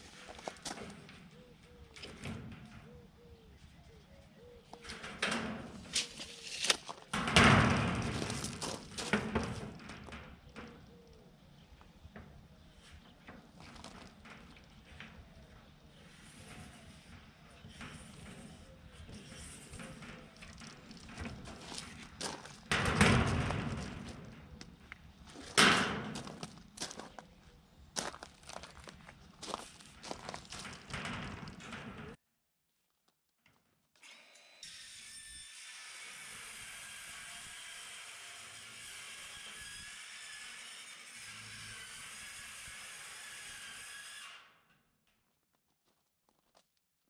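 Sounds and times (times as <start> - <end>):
building materials knocking and clattering: 4.9 - 10.8, 28.1 - 32.2.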